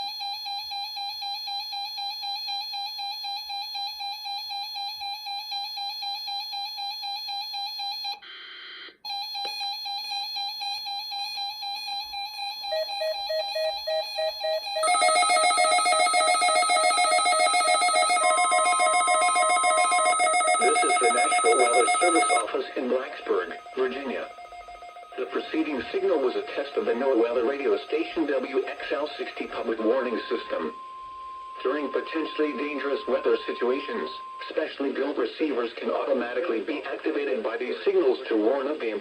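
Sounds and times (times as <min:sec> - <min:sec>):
warbling electronic alarm tones: 0:12.4 - 0:35.0.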